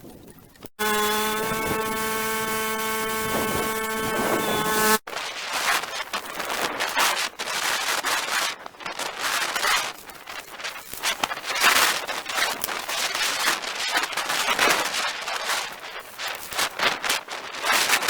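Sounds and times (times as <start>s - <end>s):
small engine running: 0.8s - 5.0s.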